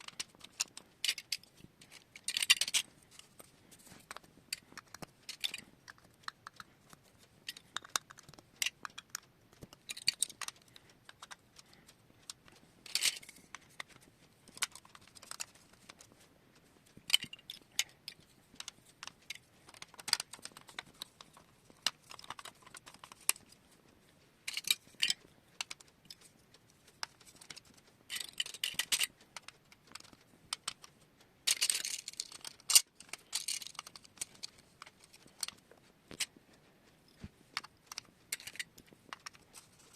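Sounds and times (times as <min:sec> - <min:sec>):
plastic marble run clattering: 0:31.5 - 0:34.5.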